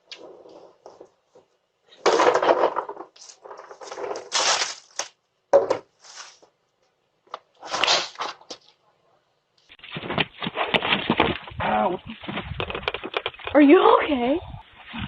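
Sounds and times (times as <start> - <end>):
wrapped candy rustling: 3.2 - 5.2.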